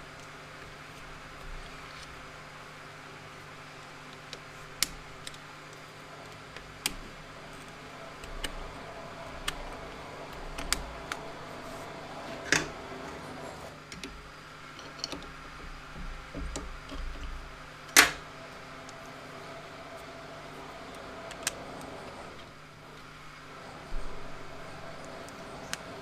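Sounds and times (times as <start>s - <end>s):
faint steady hum: 0.0s - 26.0s
metal parts clicking and knocking: 13.9s - 18.2s.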